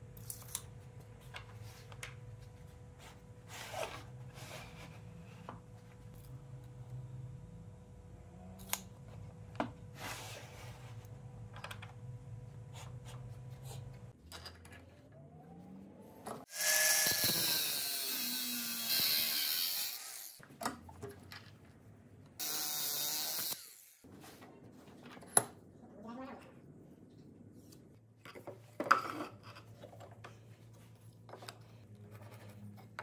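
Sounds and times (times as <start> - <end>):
power tool whining: 16.5 - 20.4, 22.4 - 24.0.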